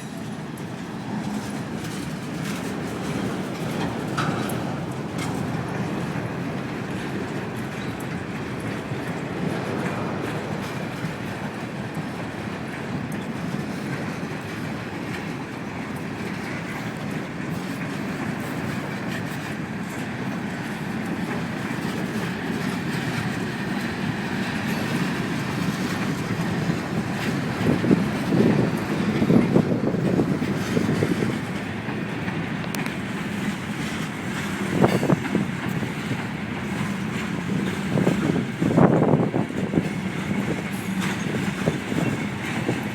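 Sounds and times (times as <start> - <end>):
train wheels rumbling on rail: 0.0 - 42.9.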